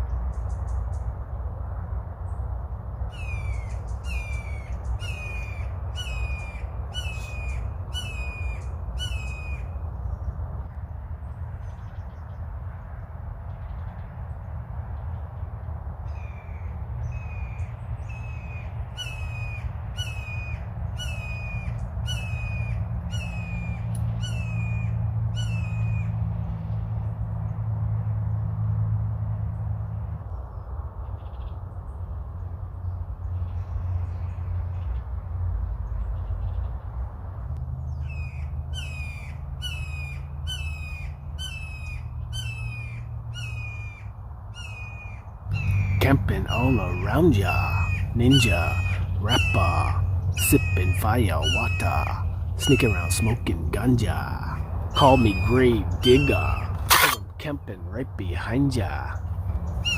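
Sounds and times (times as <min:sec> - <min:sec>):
bird harsh calls: 0:03.1 - 0:09.8, 0:16.1 - 0:26.2, 0:37.9 - 0:59.9.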